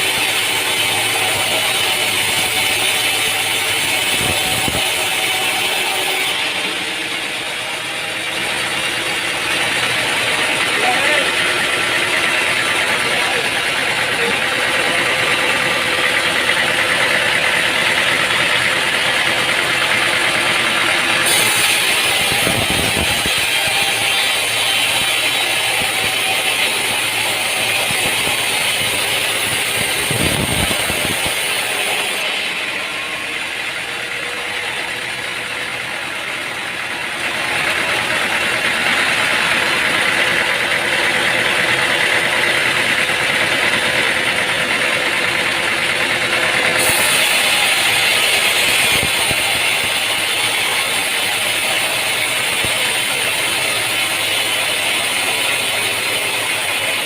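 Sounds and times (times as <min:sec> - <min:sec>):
machinery noise: 0:00.0 - 0:57.0.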